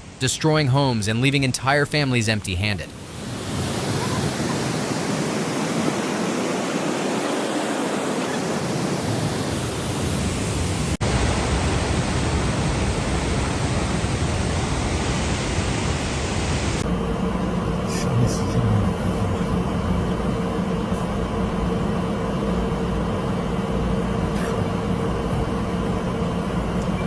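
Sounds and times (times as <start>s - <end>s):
floodwater rushing: 2.9s - 16.8s.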